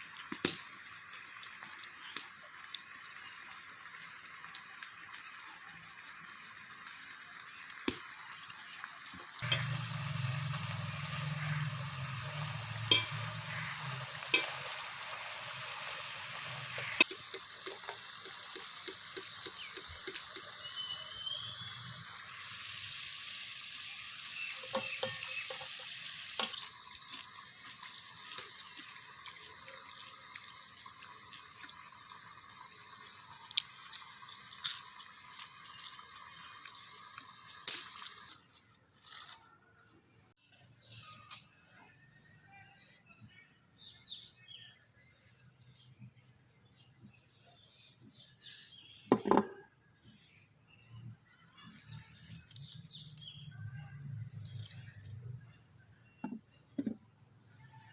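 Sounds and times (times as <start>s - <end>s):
potatoes sizzling in oil: 0.0s - 39.5s, 51.8s - 53.5s
low hum: 9.4s - 15.2s
utensil clicking against pan: 17.0s - 20.5s.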